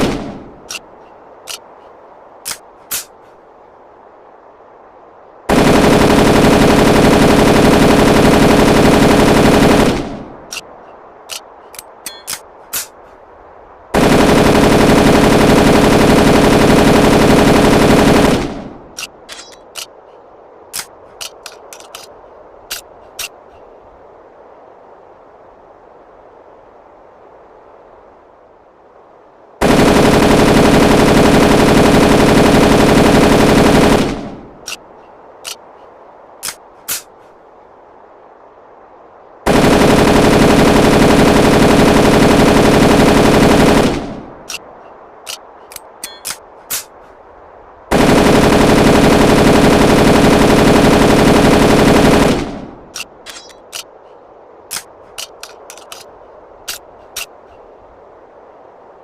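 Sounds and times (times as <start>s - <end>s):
sharp gun clicks: 1.5s - 1.7s, 2.4s - 3.1s, 19.0s - 20.0s, 20.7s - 22.1s, 22.7s - 23.4s, 36.4s - 37.1s, 45.2s - 47.0s, 54.7s - 56.1s
submachine gun automatic fire: 5.5s - 10.2s, 14.0s - 18.7s, 29.6s - 34.4s, 39.5s - 44.3s, 47.9s - 52.7s.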